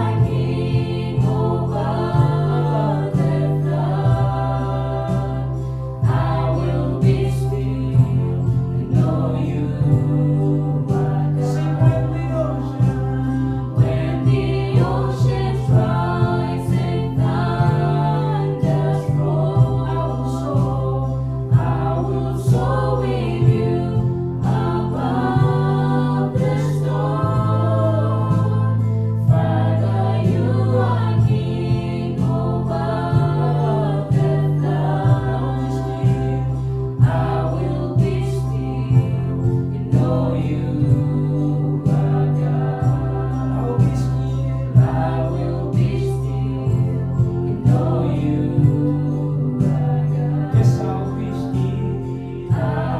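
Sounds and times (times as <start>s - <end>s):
group singing gospel song: 0.0s - 52.9s.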